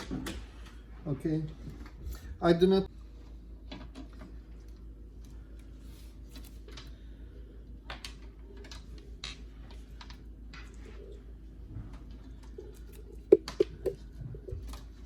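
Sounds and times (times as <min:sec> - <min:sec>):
steady low hum: 0:09.4 - 0:15.0.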